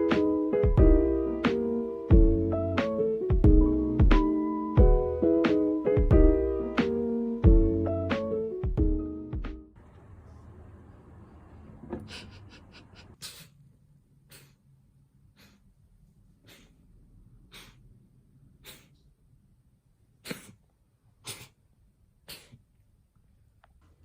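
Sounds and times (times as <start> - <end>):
cat coughing: 20.2 - 20.6, 21.2 - 21.6.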